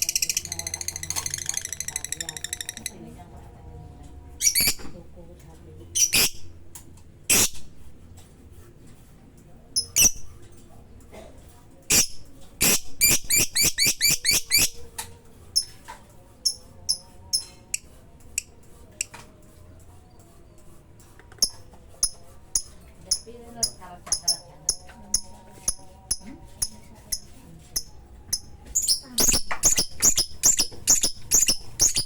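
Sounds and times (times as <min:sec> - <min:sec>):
bird chirping: 0:00.0 - 0:03.0, 0:04.4 - 0:05.0, 0:06.0 - 0:06.5, 0:11.9 - 0:14.9, 0:27.8 - 0:32.0.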